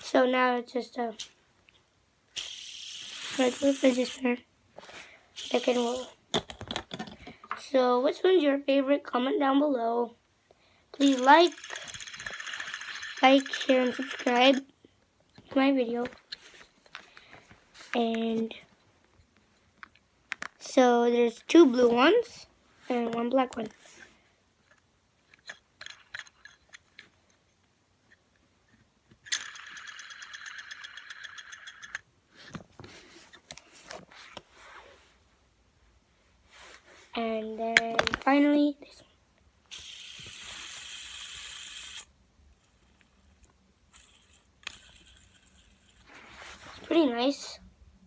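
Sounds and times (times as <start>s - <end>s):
fidget spinner whirring: 2.3s - 4.4s, 5.4s - 6.3s, 11.0s - 14.7s, 29.2s - 32.1s, 39.7s - 47.5s
small toys clicking: 2.4s - 4.2s, 5.4s - 7.2s, 11.0s - 14.7s, 25.3s - 27.1s, 29.2s - 32.1s, 39.7s - 42.1s, 43.9s - 46.0s.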